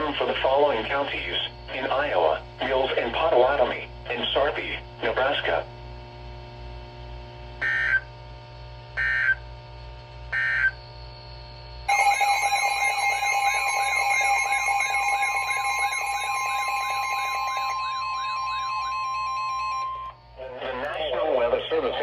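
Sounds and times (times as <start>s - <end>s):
low hum: 5.9s - 21.9s
warbling alert tone: 11.9s - 20.1s.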